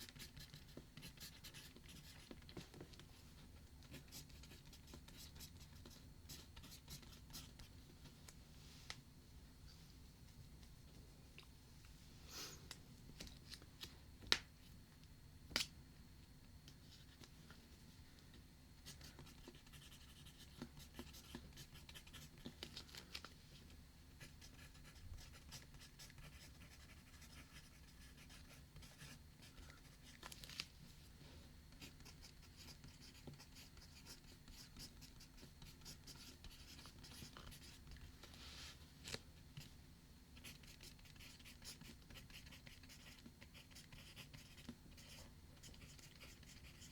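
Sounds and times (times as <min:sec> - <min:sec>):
pen scratching on paper: 0:40.4 - 0:46.9.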